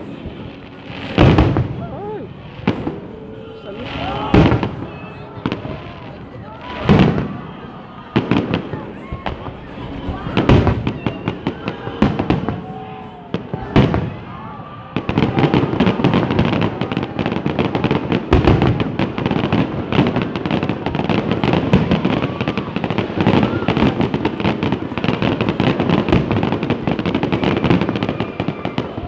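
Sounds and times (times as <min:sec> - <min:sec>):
fireworks exploding and crackling: 0:00.0 - 0:29.0.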